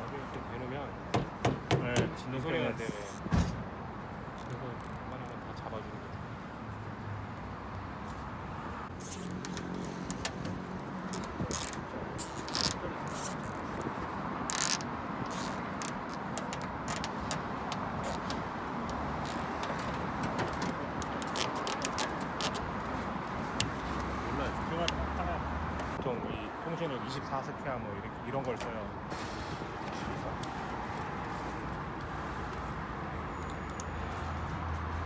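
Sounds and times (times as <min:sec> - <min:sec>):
tools clicking and tapping: 0:14.5 - 0:22.6.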